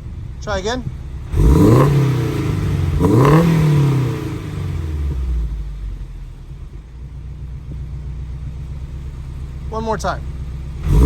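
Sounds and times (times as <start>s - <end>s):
car engine idling: 0.0s - 11.0s
car engine revving: 0.8s - 6.8s, 10.6s - 11.0s.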